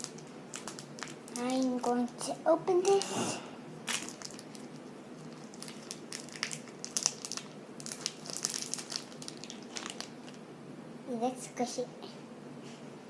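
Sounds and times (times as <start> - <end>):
plastic wrapper crinkling: 0.0 - 3.1, 3.8 - 10.4.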